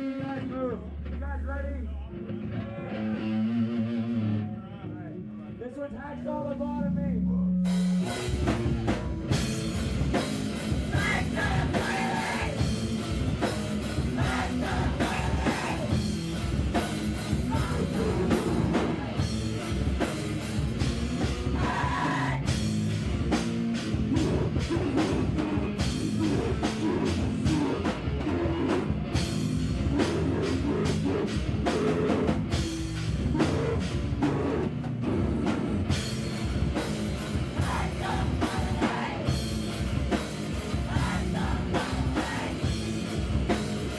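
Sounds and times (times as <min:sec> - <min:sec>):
distorted guitar and bass: 0:00.0 - 0:43.9
shouted vocals: 0:10.8 - 0:12.8, 0:14.0 - 0:16.1, 0:17.3 - 0:19.3, 0:21.4 - 0:22.6, 0:24.0 - 0:29.2, 0:29.8 - 0:32.5, 0:33.2 - 0:35.8, 0:37.5 - 0:39.4, 0:40.7 - 0:42.8.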